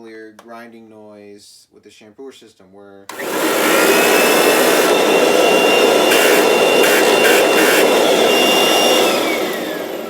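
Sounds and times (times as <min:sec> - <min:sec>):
upright vacuum motor whine: 0:03.1 - 0:10.0.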